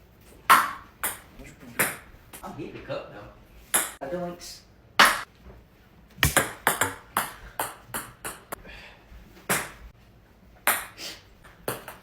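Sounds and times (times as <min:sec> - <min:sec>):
ping-pong ball bouncing on table: 0:03.8 - 0:04.0, 0:06.2 - 0:08.6, 0:10.7 - 0:10.9, 0:11.5 - 0:12.0.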